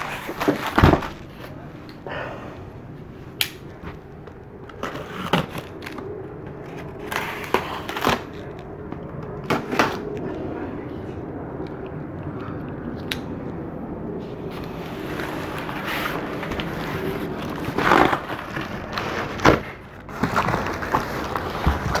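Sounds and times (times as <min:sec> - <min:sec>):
cardboard box being unpacked: 0:00.0 - 0:01.6, 0:04.7 - 0:08.6, 0:14.5 - 0:22.0.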